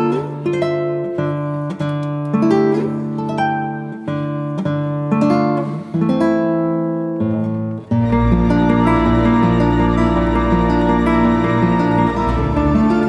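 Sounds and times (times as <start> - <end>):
plucked acoustic guitar: 0.0 - 13.0.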